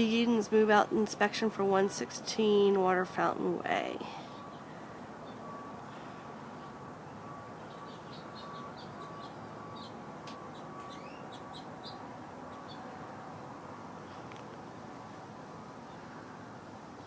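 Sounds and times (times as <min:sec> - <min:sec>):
steady background hiss: 0:00.0 - 0:17.0
small birds chirping: 0:04.3 - 0:13.0.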